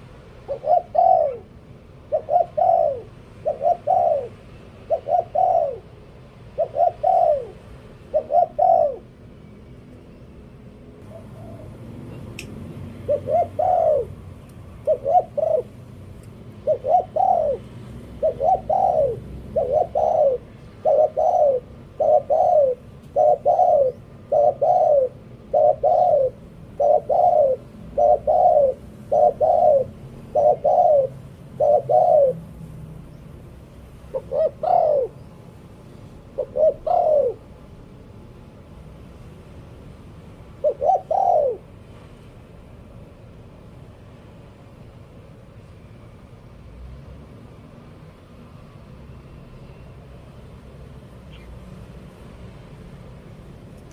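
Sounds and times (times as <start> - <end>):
dove cooing: 0.0 - 9.2, 11.0 - 32.7, 34.0 - 35.4, 36.3 - 37.7, 40.6 - 41.8.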